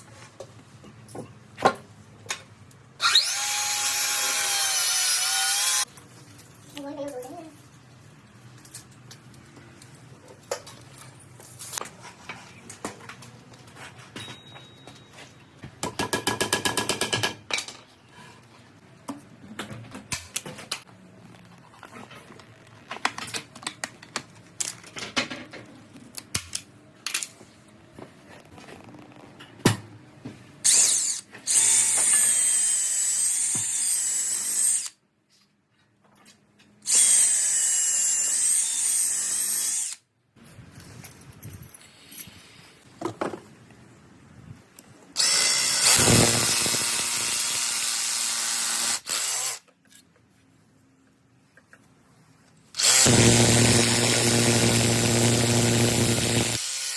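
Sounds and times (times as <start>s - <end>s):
power drill whining: 3.0s - 5.8s, 45.2s - 49.6s, 52.8s - 56.9s.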